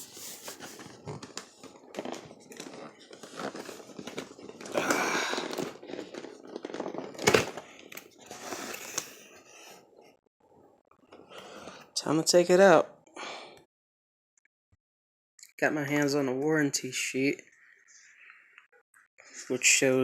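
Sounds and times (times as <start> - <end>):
packaging rustling and crinkling: 0.0 - 9.4.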